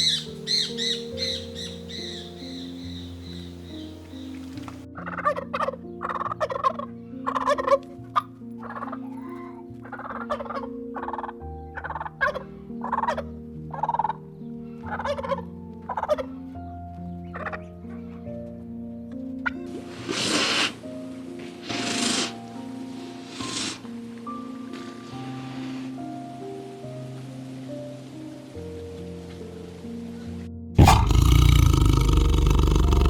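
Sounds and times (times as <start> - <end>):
fowl calling: 0.0 - 14.2
background music with low notes: 0.0 - 33.0.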